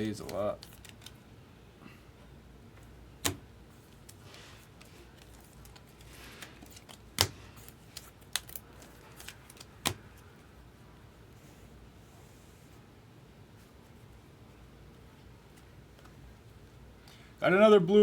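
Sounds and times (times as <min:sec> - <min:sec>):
cards sliding rustles: 0:00.2 - 0:01.2, 0:03.2 - 0:10.3.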